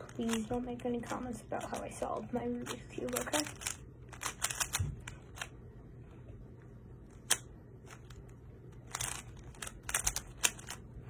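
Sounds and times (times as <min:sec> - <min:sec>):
faint hum: 0:00.0 - 0:11.0
plastic cube layers clicking: 0:02.7 - 0:05.5, 0:08.8 - 0:10.8.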